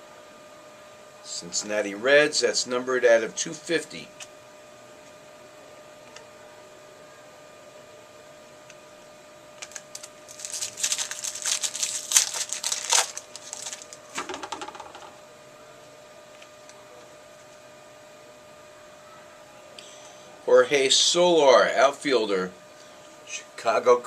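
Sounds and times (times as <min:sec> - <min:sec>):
foil wrapper crinkling and tearing: 0:09.6 - 0:14.2.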